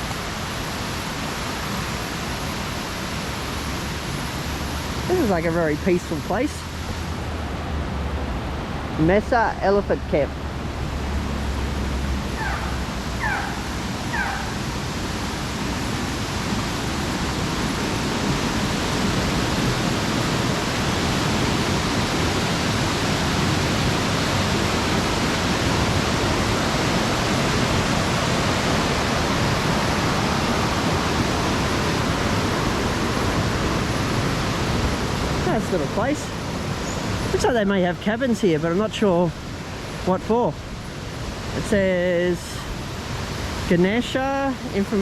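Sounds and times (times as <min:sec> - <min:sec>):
waterfall rushing: 0:00.0 - 0:45.0
short falling calls: 0:12.1 - 0:14.9.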